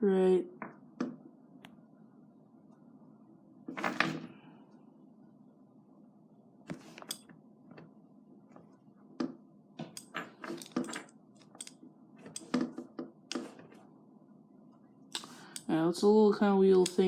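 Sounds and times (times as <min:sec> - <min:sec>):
pistol parts clicking and clacking: 0:09.9 - 0:12.5.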